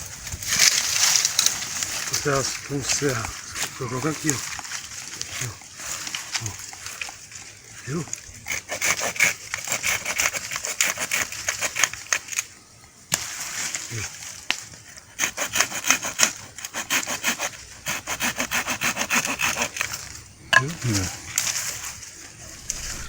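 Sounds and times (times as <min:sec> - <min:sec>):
saw cutting wood: 0:08.5 - 0:11.9, 0:15.2 - 0:21.1.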